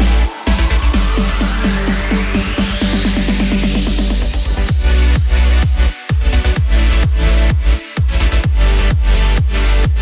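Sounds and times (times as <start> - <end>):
electronic dance music build-up: 0.0 - 10.0.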